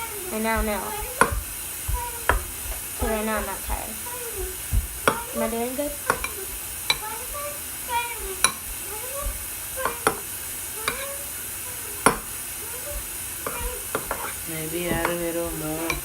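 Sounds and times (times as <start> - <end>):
spoon stirring squelching slime: 0.0 - 16.0.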